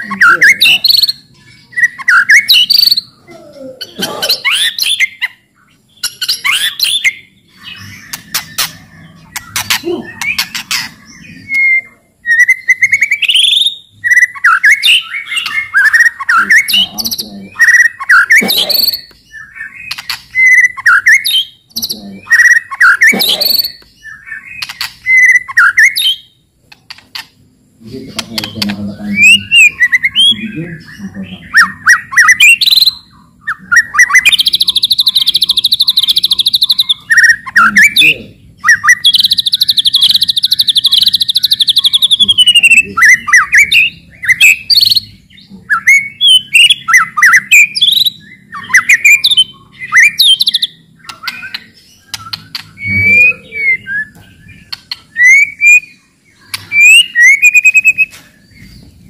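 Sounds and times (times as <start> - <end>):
bird whistled song: 0.0 - 3.2, 4.4 - 26.4, 27.9 - 58.9
bird harsh rattling chatter: 7.8 - 11.2, 19.8 - 20.4, 24.5 - 25.1.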